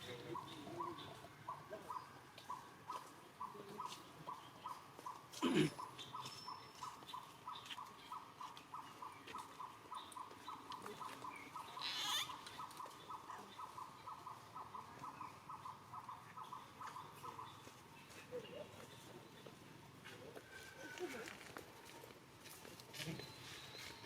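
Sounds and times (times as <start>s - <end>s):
baby monkeys squealing: 11.8s - 12.5s.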